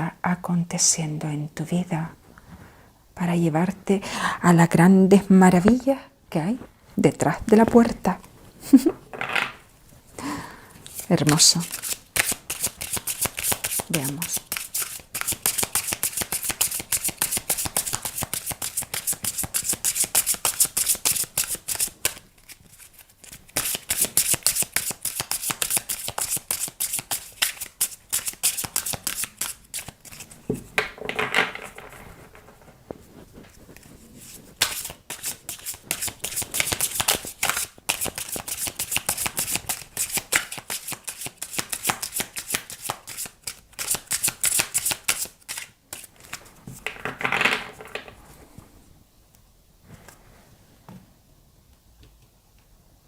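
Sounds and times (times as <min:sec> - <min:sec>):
cards being shuffled: 0:10.8 - 0:48.2.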